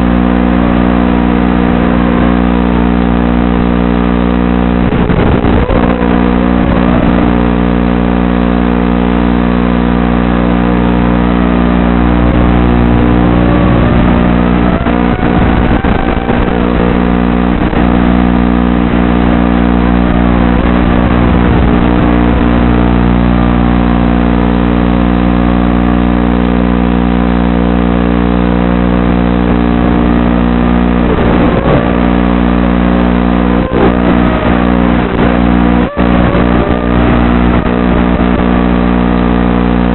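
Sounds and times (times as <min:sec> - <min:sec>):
quadcopter motors whining: 0:04.9 - 0:08.2, 0:11.8 - 0:22.3.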